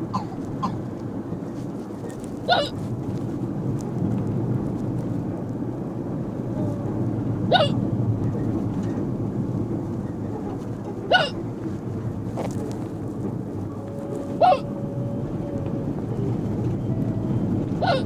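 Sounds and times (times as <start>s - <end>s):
bus rumble: 0.0s - 18.0s
person hiccupping: 2.5s - 2.8s, 7.5s - 7.8s, 11.1s - 11.4s.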